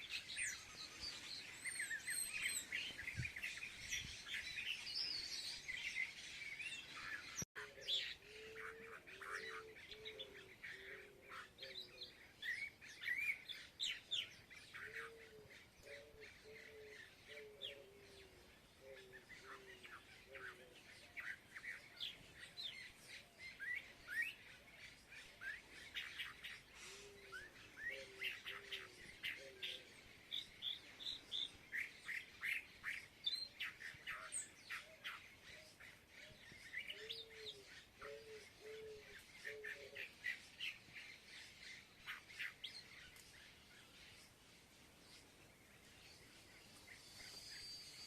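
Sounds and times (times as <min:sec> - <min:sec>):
small birds chirping: 0:00.0 - 0:48.0
lower bird call: 0:46.6 - 0:48.0.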